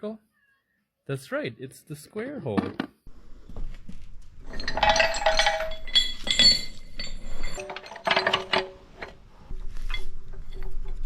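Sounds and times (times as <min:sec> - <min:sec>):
steel chains clinking: 0:04.3 - 0:11.0.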